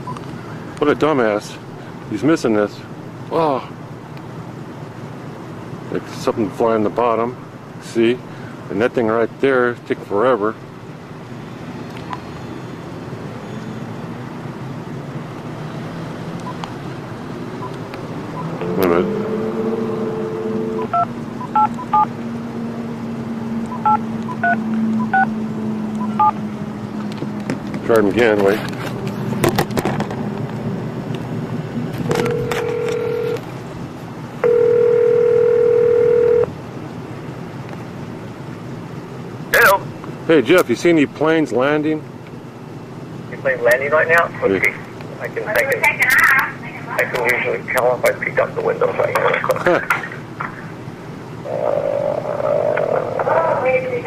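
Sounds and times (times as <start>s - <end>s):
faint steady hum: 16.4s - 22.3s
low outdoor rumble: 16.4s - 34.4s, 43.1s - 54.0s
telephone ringback tone: 18.3s - 22.1s, 32.1s - 33.4s, 34.4s - 36.5s.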